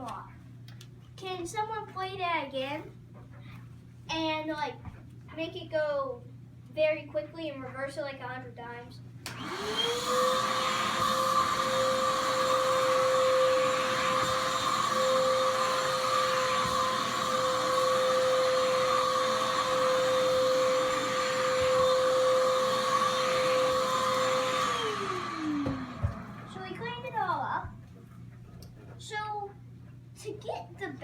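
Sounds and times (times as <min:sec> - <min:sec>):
handheld vacuum cleaner whining: 0:09.2 - 0:27.8.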